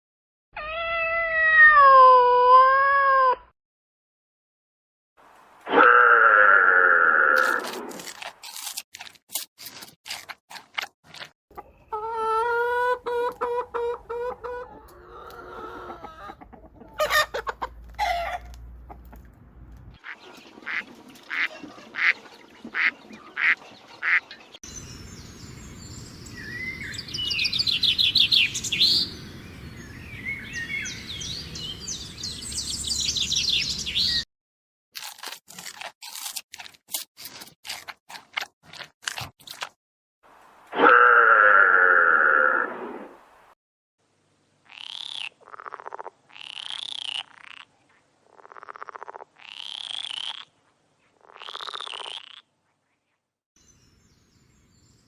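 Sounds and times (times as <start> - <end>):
chickens clucking: 11.5 - 19.3, 20.1 - 24.5.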